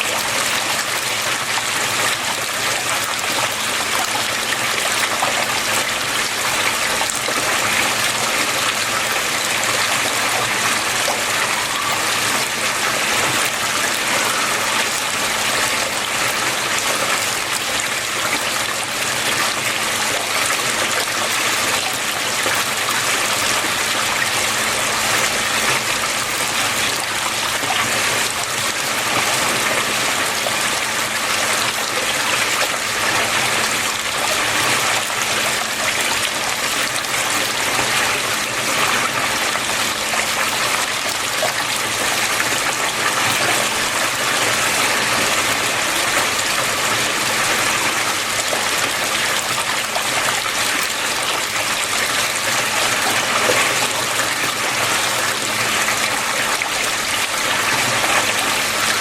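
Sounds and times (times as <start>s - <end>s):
water flowing: 0.0s - 59.0s.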